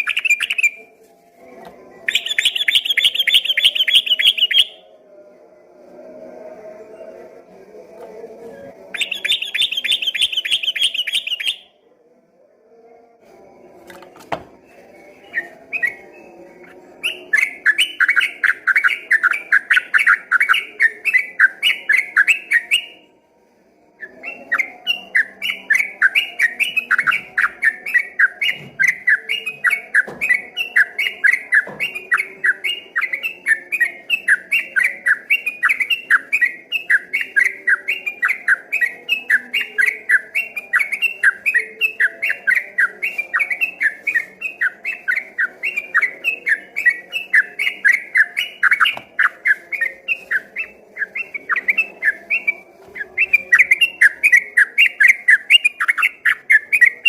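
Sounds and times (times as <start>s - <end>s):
high-pitched bird trill: 0.0s - 0.9s, 2.0s - 4.9s, 9.0s - 11.8s, 14.6s - 23.0s
bulbul singing: 0.0s - 1.0s, 1.6s - 4.9s, 8.0s - 11.8s, 13.8s - 23.1s, 24.0s - 57.0s.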